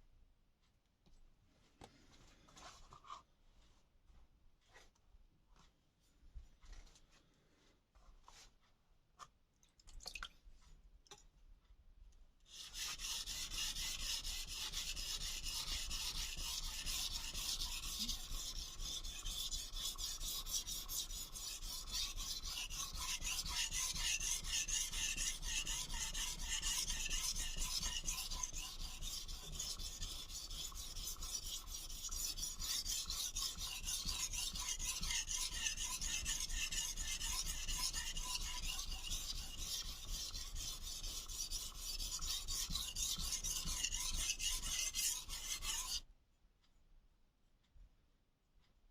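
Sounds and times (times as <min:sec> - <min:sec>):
knife scraping on whetstone: 0:12.5 - 0:46.0.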